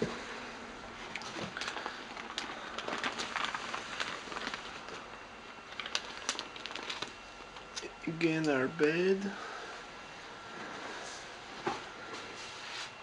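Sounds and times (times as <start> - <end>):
packaging rustling: 1.2 - 7.8.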